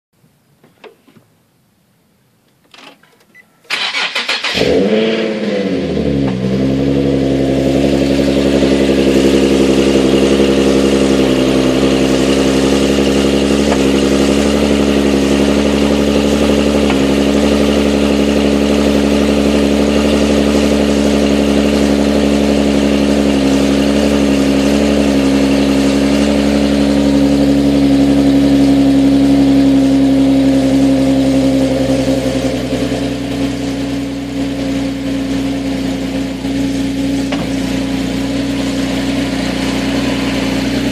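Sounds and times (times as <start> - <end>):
car engine fast idling: 3.7 - 40.9.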